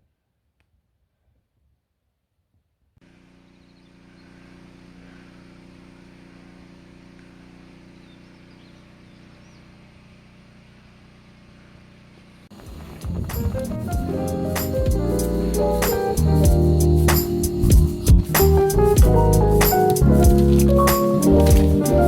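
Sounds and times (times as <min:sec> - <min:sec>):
vehicle engine humming: 0:03.0 - 0:22.0
faint bird chirps: 0:03.4 - 0:06.2, 0:07.1 - 0:10.0
music with guitar and drums: 0:13.0 - 0:22.0.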